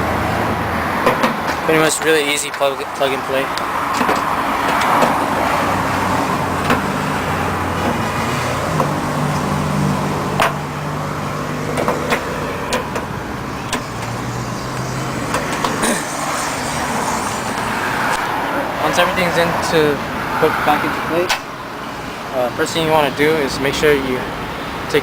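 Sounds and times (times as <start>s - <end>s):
traffic noise: 0.0s - 25.0s
clicks and knocks of parts: 3.6s - 5.2s.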